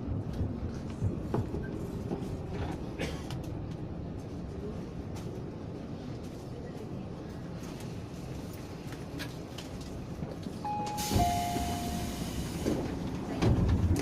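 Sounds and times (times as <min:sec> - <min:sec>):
low rumble of standing train: 0:00.0 - 0:14.0
train door chime: 0:10.6 - 0:12.7
sliding doors closing with air hiss: 0:10.7 - 0:13.7.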